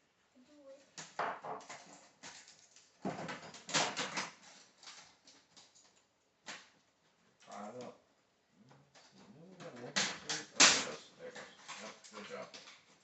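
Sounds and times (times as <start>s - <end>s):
plastic parts clicking and rattling: 1.0s - 6.1s, 11.4s - 13.0s.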